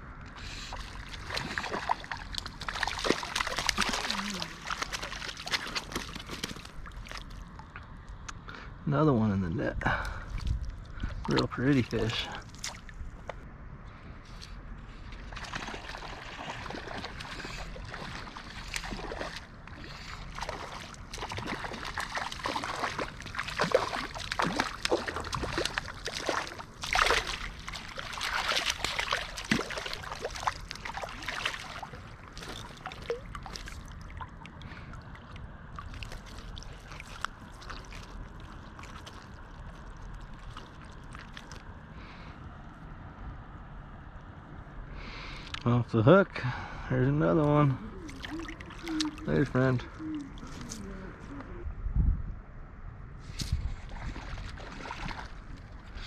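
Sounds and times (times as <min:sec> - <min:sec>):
water splashing and sloshing: 0:00.0 - 0:08.4, 0:09.8 - 0:45.7, 0:47.3 - 0:51.6, 0:53.2 - 0:56.0
river rushing: 0:20.4 - 0:34.9.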